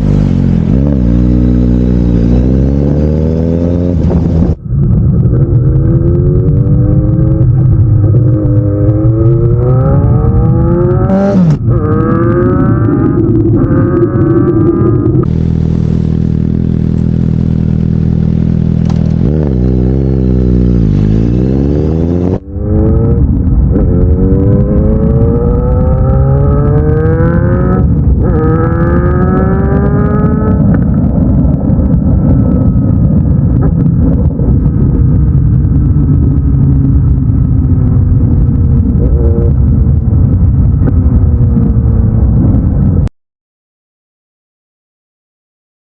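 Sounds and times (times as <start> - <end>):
motorcycle accelerating through gears: 0.0 - 43.1
motorcycle engine revving: 0.0 - 43.1.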